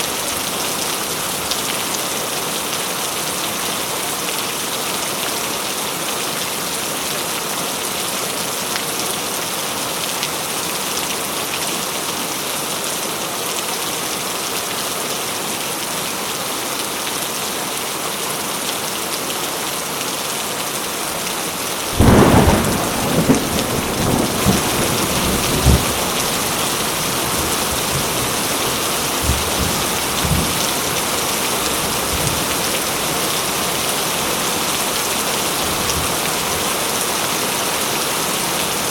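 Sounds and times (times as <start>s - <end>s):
heavy rain falling: 0.0s - 38.9s
thunder clap and rumble: 22.0s - 28.3s.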